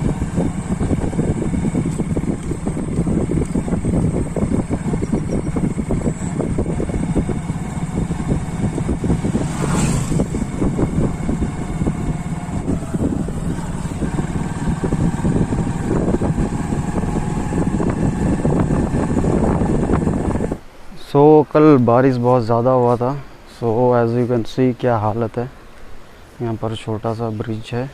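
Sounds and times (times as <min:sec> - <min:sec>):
vehicle engine running: 0:00.0 - 0:20.6
wind buffeting microphone: 0:00.0 - 0:20.6.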